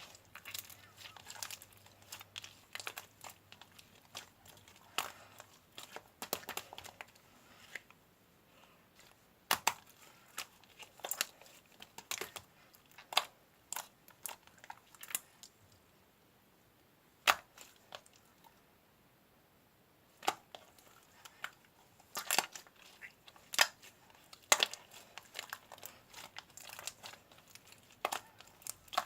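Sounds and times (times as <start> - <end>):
slime clicking and popping: 9.5 - 15.3, 17.2 - 18.1.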